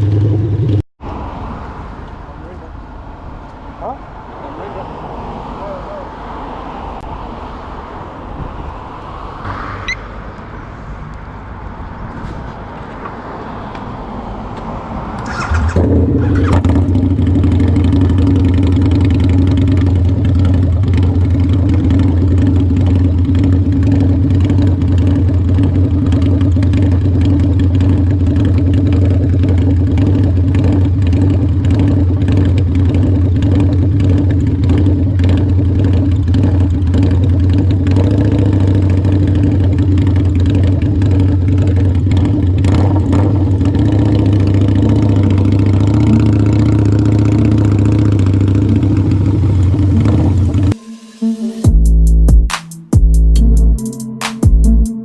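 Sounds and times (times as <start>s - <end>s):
motorcycle engine starting: 0.0s - 0.8s, 15.1s - 50.8s
motorcycle engine idling: 15.3s - 50.6s.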